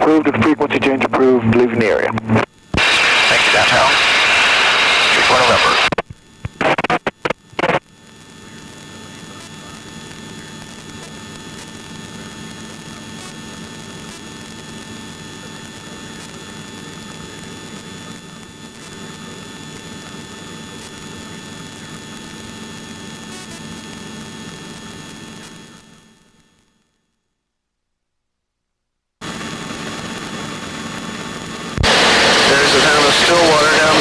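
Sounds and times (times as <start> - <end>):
high whines: 0.0 - 5.9, 30.6 - 34.0
helicopter engine and rotor noise: 8.1 - 26.5, 29.2 - 34.0.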